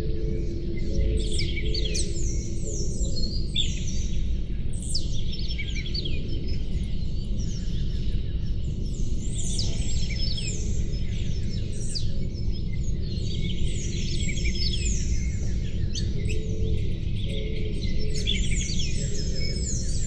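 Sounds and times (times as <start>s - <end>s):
songbirds chirping: 0.0s - 20.0s.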